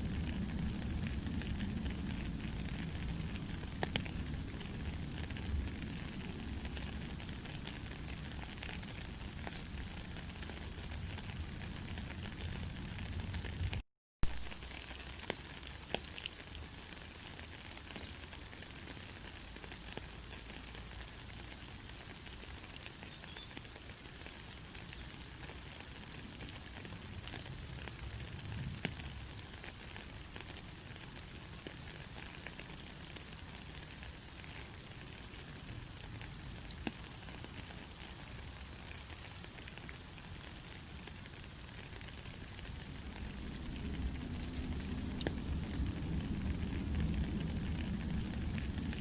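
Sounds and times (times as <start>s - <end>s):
faint low rumble: 42.3s - 49.0s.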